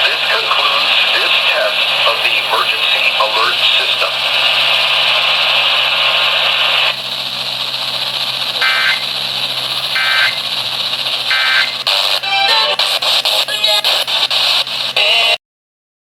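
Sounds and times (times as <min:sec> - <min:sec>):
digital data bursts over radio: 0:00.0 - 0:15.4
loud static hiss: 0:00.0 - 0:15.4
radio hiss: 0:00.0 - 0:15.4.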